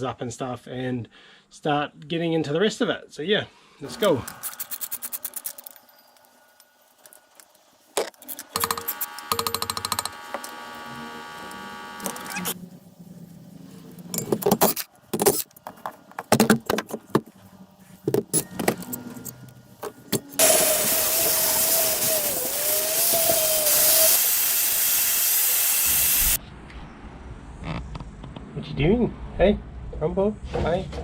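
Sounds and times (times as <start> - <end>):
loud steady hiss with whistle: 20.4 - 26.4.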